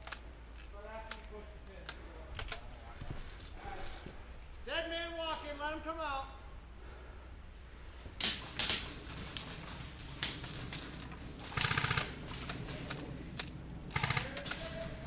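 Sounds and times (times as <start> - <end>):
airsoft gun full-auto bursts: 8.2 - 12.6, 13.9 - 15.0.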